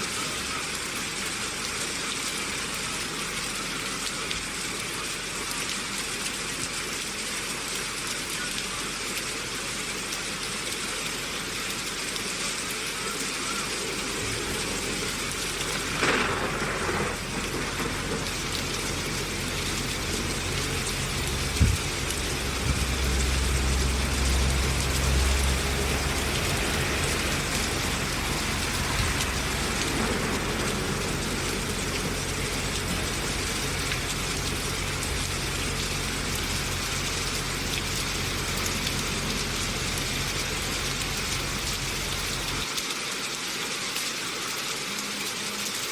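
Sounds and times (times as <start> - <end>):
steady rain falling: 0.0 - 45.9
low steady hum: 14.0 - 42.7.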